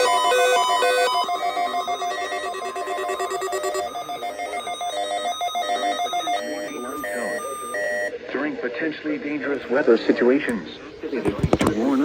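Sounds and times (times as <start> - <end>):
electronic ringing tones: 0.0 - 8.2.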